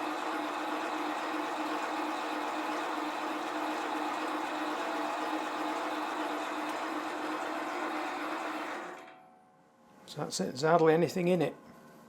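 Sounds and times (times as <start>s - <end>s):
lathe motor humming: 0.0s - 9.1s.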